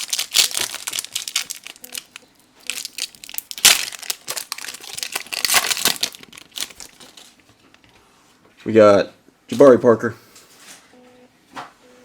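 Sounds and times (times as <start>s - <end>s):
foil wrapper tearing and crinkling: 0.0s - 7.4s.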